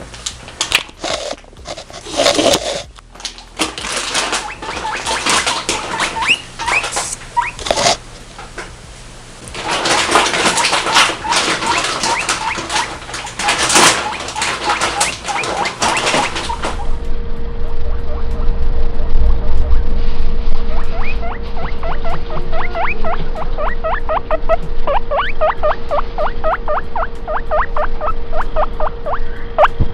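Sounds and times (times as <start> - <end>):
rustling and clicking: 0.0 - 8.8, 9.4 - 17.0
guinea pigs squealing: 1.0 - 8.1, 9.4 - 29.8.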